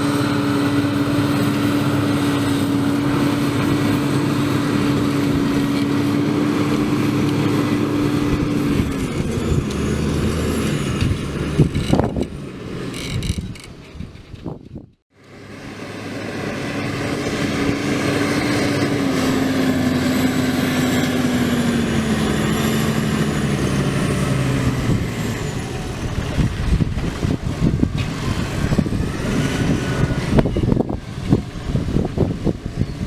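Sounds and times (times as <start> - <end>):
tractor diesel engine under load: 0.0 - 33.0.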